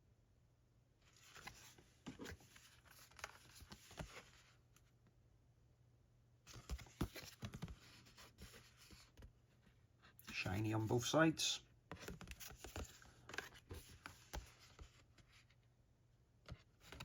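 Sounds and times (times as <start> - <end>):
cards rustling and tapping: 1.1 - 4.5, 6.5 - 9.3, 11.9 - 15.5, 16.5 - 17.0.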